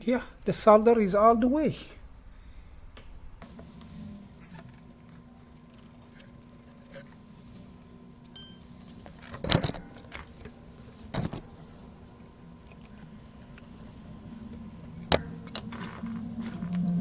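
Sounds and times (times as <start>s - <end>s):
steady faint hum: 0.0s - 17.0s
small metal tools clinking: 8.3s - 16.7s.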